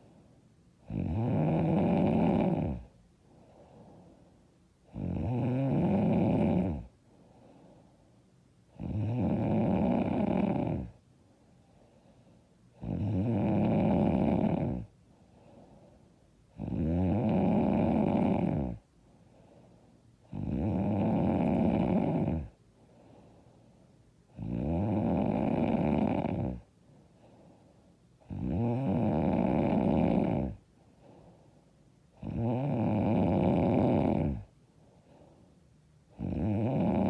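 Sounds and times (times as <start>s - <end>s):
faint breathing: 0.0s - 0.8s, 2.4s - 4.9s, 6.6s - 8.7s, 10.2s - 12.8s, 14.4s - 16.5s, 18.1s - 20.3s, 21.4s - 24.3s, 26.6s - 28.3s, 29.7s - 32.2s, 34.2s - 36.2s
woman snoring loudly: 0.8s - 2.9s, 4.9s - 6.9s, 8.8s - 10.9s, 12.8s - 14.9s, 16.6s - 18.8s, 20.3s - 22.5s, 24.4s - 26.6s, 28.3s - 30.6s, 32.2s - 34.5s, 36.2s - 37.0s.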